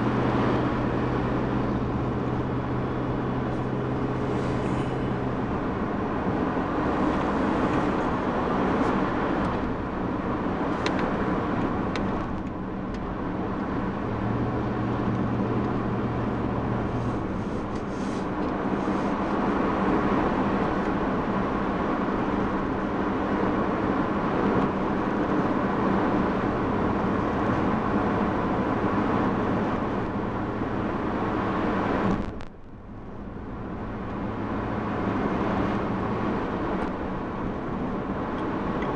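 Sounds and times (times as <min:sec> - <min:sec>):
low hum: 0:00.0 - 0:06.4
road travel rumble: 0:00.0 - 0:38.9.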